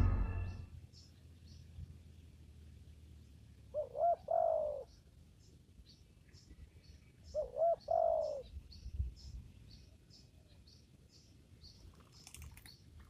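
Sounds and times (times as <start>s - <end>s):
dove cooing: 3.7s - 4.9s, 7.3s - 8.5s.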